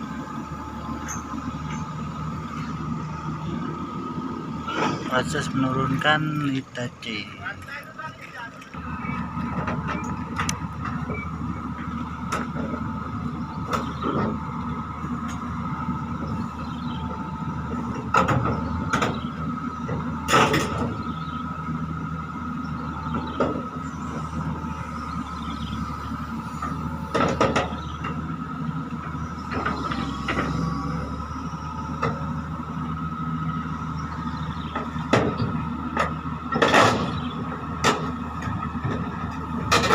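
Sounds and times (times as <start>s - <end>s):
excavator engine with high whine: 0.0s - 39.9s.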